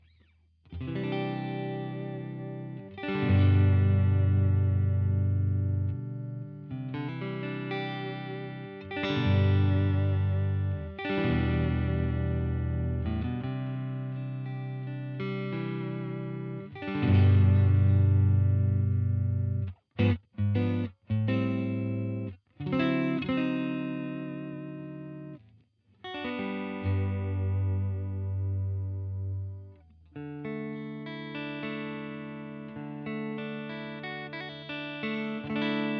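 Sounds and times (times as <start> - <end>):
electric guitar strumming chords: 0.7 - 25.4, 26.0 - 35.9.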